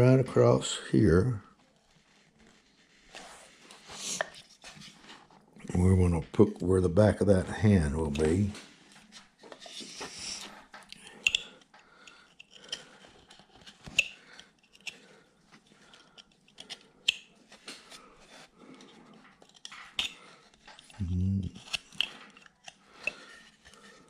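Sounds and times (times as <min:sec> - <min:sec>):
knife snicking wood: 0:10.0 - 0:15.2, 0:15.8 - 0:17.3, 0:19.4 - 0:21.0.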